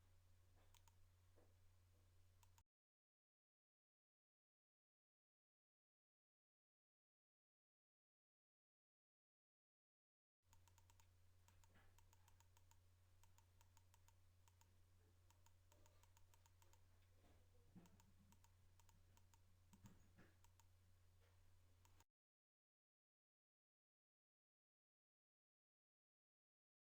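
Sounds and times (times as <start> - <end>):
faint low hum: 0.0 - 2.6, 10.5 - 22.0
faint sharp clicks: 0.6 - 1.0, 2.4 - 2.6, 10.5 - 14.7, 21.8 - 22.0.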